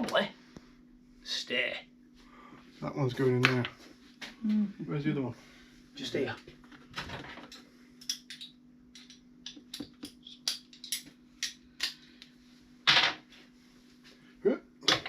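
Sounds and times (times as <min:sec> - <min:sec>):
steady low hum: 0:00.0 - 0:15.0
hand tools clicking and clinking: 0:08.0 - 0:12.0.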